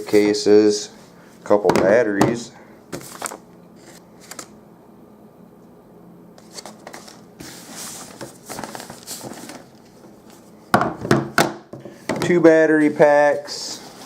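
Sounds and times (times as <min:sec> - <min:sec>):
faint steady hum: 0:00.0 - 0:14.0
small plastic items rustling: 0:06.4 - 0:10.4.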